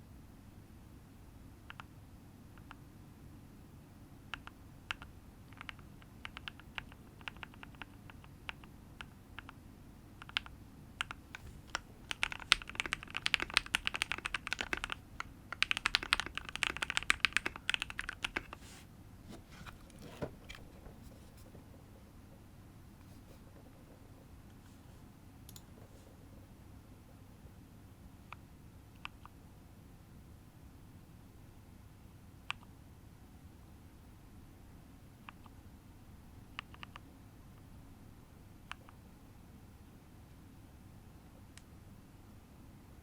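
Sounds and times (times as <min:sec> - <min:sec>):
mechanical keyboard typing: 0:04.3 - 0:09.6, 0:10.2 - 0:18.6, 0:36.6 - 0:37.0.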